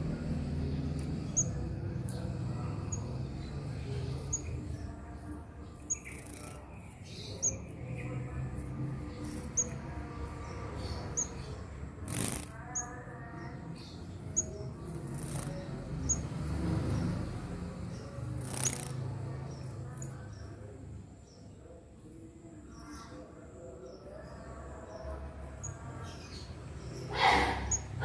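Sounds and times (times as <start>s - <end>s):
wings fluttering: 12.0s - 12.6s, 14.9s - 15.7s, 18.3s - 19.2s.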